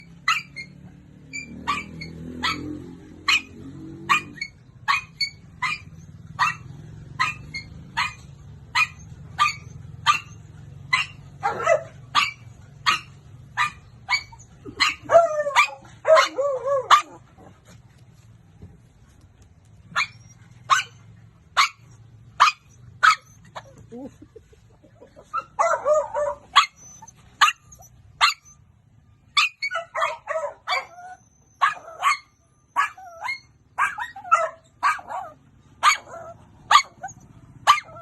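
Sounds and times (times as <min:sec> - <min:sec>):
dog yelping: 0:00.0 - 0:17.8, 0:19.6 - 0:28.7, 0:29.3 - 0:38.0
dog barking: 0:01.6 - 0:17.3, 0:19.9 - 0:23.4, 0:25.3 - 0:26.8, 0:27.4 - 0:28.5, 0:29.4 - 0:38.0.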